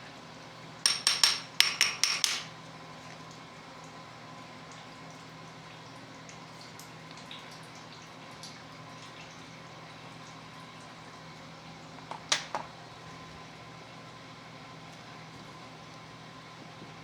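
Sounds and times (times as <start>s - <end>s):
clatter of sharp knocks: 0.9s - 2.5s.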